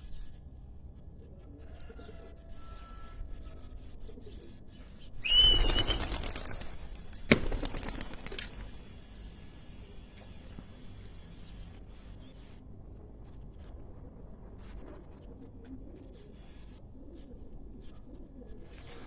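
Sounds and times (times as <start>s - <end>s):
pigeon wings flapping: 5.2s - 8.9s.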